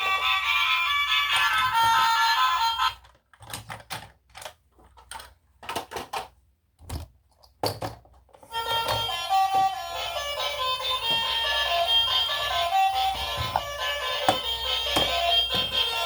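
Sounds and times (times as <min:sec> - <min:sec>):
music: 0:00.0 - 0:03.0, 0:08.5 - 0:16.0.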